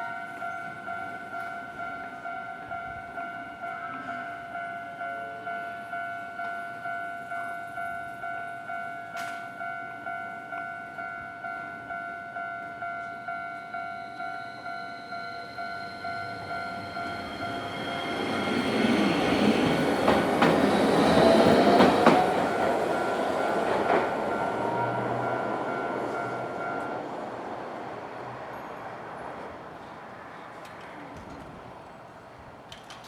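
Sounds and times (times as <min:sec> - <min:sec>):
level crossing alarm bell: 0:00.0 - 0:27.1
tram passing: 0:00.0 - 0:33.0
wheels clacking over rail joints: 0:16.2 - 0:29.6.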